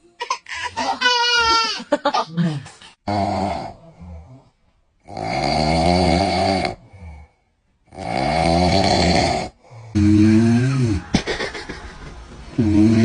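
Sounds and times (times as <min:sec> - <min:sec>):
loud rasping snores: 0:03.1 - 0:07.3, 0:07.9 - 0:11.0, 0:12.6 - 0:13.0.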